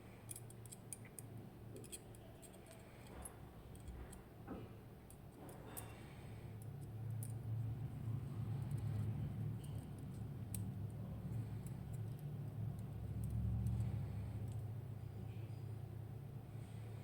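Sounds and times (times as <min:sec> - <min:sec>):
low steady hum: 0:00.0 - 0:17.0
small metallic clicks: 0:06.6 - 0:07.5, 0:08.6 - 0:14.7.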